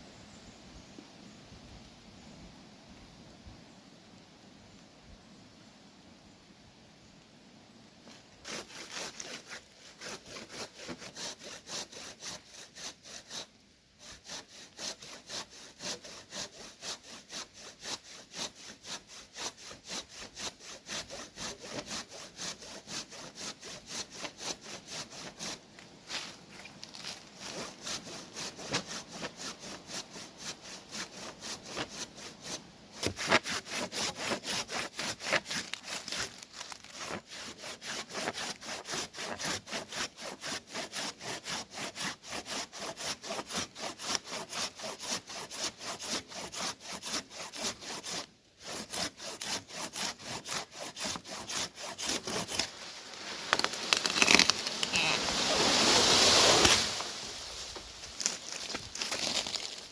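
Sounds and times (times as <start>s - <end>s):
rustling scrape: 8.1s - 12.4s, 25.2s - 29.8s, 31.3s - 39.5s, 49.9s - 59.9s
hand saw cutting wood: 8.4s - 59.9s.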